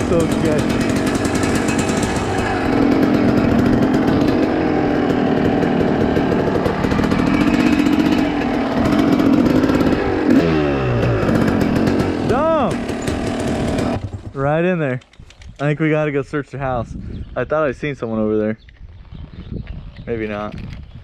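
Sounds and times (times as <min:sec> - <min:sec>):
dirt bike engine running: 0:00.0 - 0:14.8.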